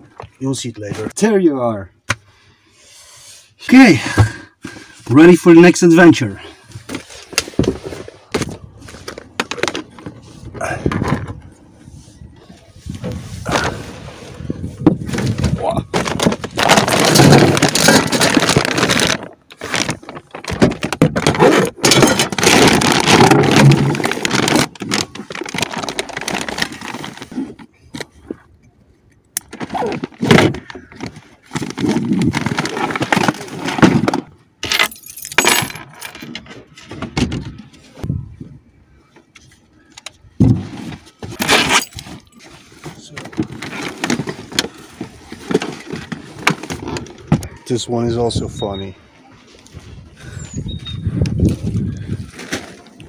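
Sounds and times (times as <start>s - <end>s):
objects clattering and clinking: 15.1s - 27.6s, 29.5s - 37.6s, 40.4s - 47.5s.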